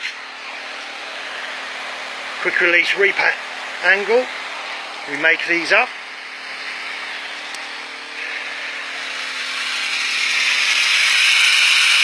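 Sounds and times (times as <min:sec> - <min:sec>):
steady low hum: 0:00.1 - 0:12.0
water spraying hiss: 0:08.2 - 0:12.0.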